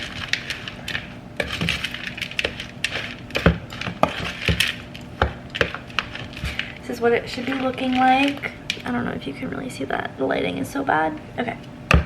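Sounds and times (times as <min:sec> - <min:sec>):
spoon stirring thick mixture: 0:00.0 - 0:09.1.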